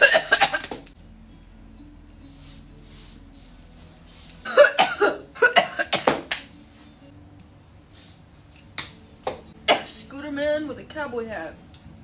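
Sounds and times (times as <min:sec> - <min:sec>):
person coughing: 0:00.0 - 0:00.7, 0:04.5 - 0:06.2, 0:09.7 - 0:09.9
faint music: 0:00.0 - 0:12.0.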